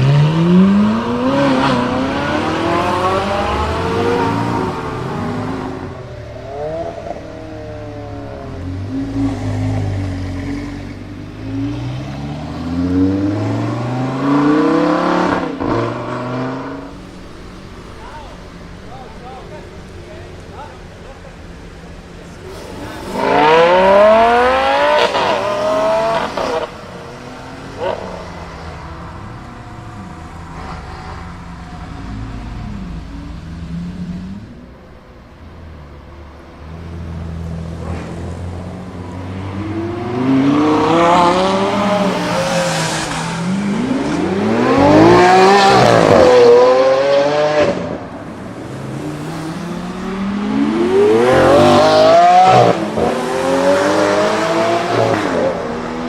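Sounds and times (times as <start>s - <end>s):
car engines accelerating hard: 0.0s - 56.0s
low engine rumble: 16.7s - 23.2s, 26.7s - 40.0s.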